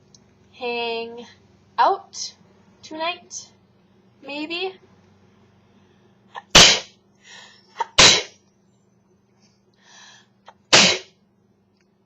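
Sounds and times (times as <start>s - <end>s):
woman sneezing: 6.4s - 6.9s, 7.8s - 8.4s, 10.5s - 11.1s.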